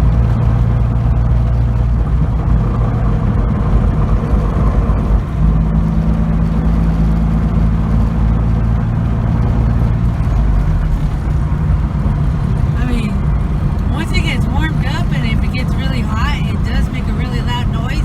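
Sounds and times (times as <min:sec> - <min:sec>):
car engine running: 0:00.0 - 0:18.0
clutch rattling and scraping: 0:03.8 - 0:18.0.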